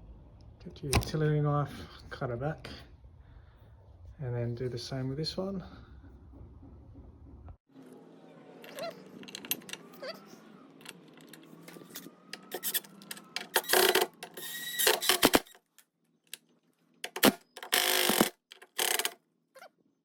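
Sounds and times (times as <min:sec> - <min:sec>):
cordless drill driving screws: 0:12.4 - 0:15.5, 0:17.2 - 0:19.2.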